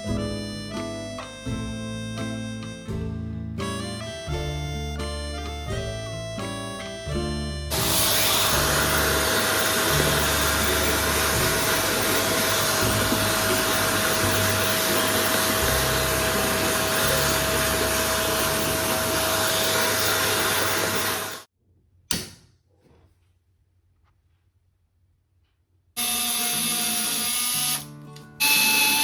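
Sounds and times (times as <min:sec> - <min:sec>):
electric blower motor whine: 0:07.7 - 0:21.5
sharp click: 0:22.1 - 0:22.5.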